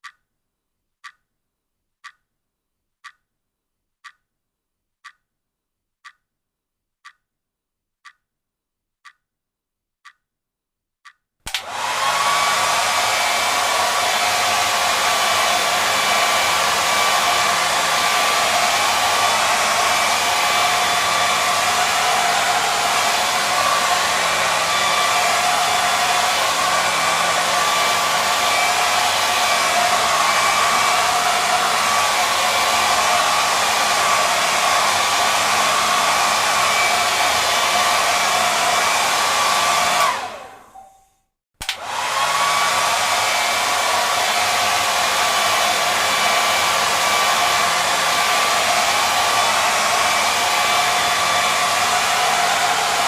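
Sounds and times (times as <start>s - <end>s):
hair dryer blowing: 11.5s - 53.0s.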